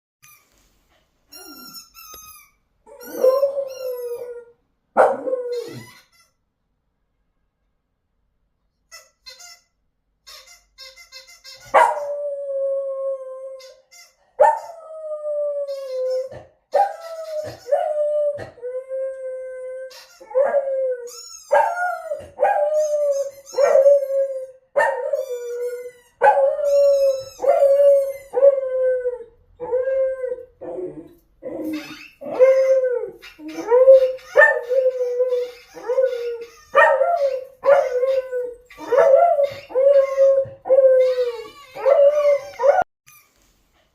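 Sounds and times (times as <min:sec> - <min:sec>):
squeaky toy squeaks: 0:00.2 - 0:00.6, 0:01.3 - 0:04.3, 0:05.5 - 0:06.4, 0:08.8 - 0:12.1, 0:13.6 - 0:14.7, 0:15.7 - 0:17.8, 0:19.9 - 0:24.2, 0:24.8 - 0:28.4, 0:31.6 - 0:43.4
dog howling: 0:26.2 - 0:42.9.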